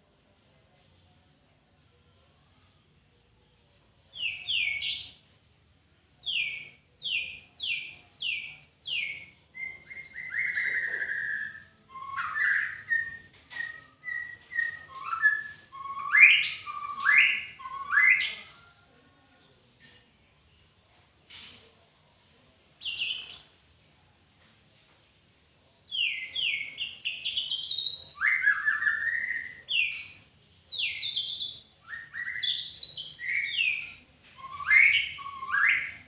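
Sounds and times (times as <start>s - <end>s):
songbird singing: 6.2s - 18.6s, 25.9s - 36.0s.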